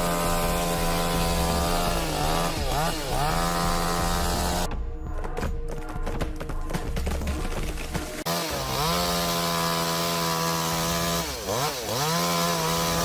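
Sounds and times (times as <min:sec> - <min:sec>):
chainsaw revving: 0:00.0 - 0:04.7, 0:08.2 - 0:13.0
background music: 0:00.0 - 0:13.0.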